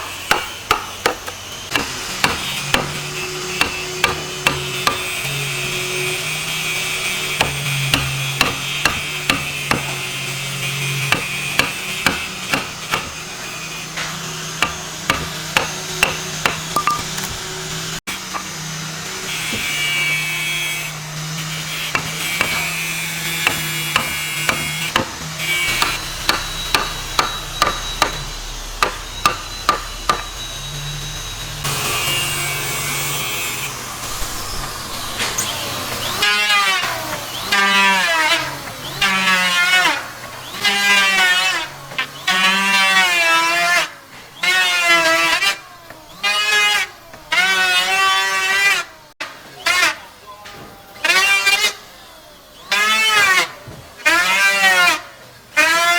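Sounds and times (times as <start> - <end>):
sharp hammer strikes: 14.6 - 17.4, 23.5 - 30.5.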